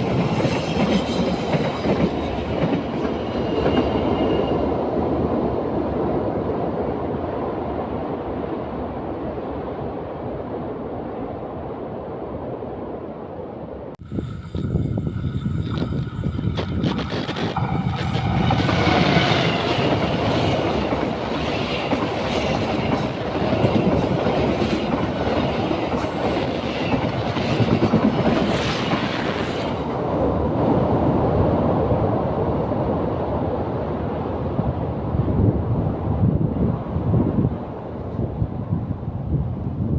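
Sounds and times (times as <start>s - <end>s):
train wheels on rails: 0.0s - 6.0s, 14.0s - 33.6s.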